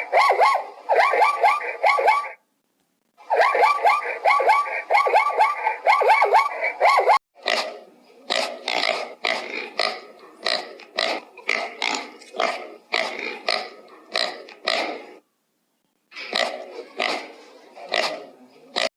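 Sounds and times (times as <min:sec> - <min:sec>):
pig grunting: 0:07.4 - 0:15.2, 0:16.2 - 0:18.9.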